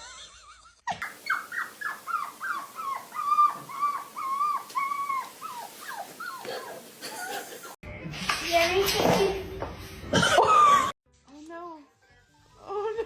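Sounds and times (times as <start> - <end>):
dog whining yowls: 1.0 - 7.0.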